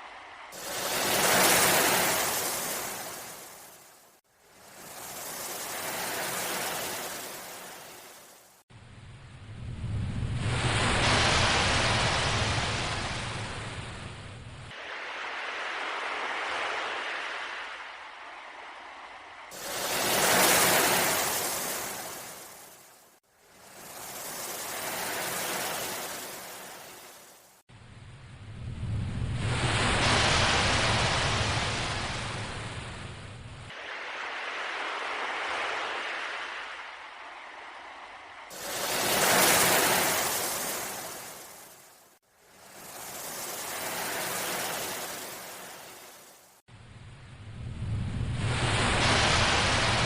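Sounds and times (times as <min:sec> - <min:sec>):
ocean waves surging: 0:00.0 - 0:08.6, 0:14.7 - 0:27.6, 0:29.4 - 0:33.1, 0:33.7 - 0:46.6, 0:48.3 - 0:50.0
low rumble: 0:08.8 - 0:12.4, 0:27.8 - 0:31.6, 0:46.8 - 0:50.0.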